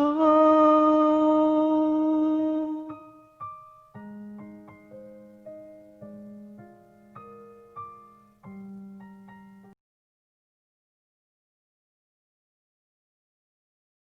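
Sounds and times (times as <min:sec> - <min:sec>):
soft piano notes and chords: 0:00.0 - 0:09.8.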